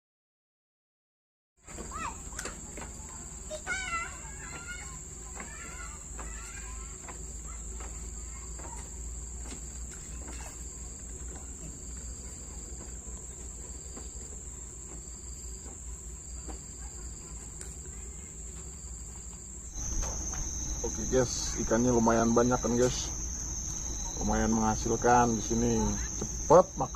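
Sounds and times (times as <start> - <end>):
insect high thin drone: 1.6 - 26.9
insect call in short phrases: 15.2 - 26.9.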